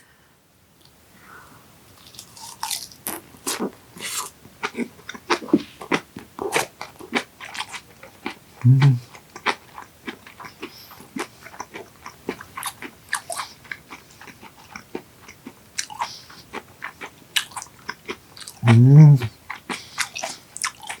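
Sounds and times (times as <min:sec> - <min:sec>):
mouth chewing raw fish: 0:02.0 - 0:21.0.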